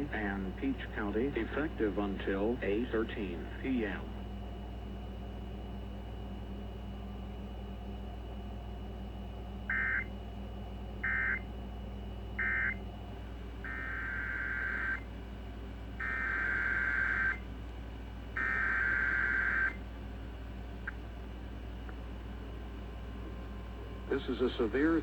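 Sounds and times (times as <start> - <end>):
steady low hum: 0.0 - 25.0
buzzy two-tone data bursts: 13.7 - 15.0, 16.0 - 17.4, 18.4 - 19.8.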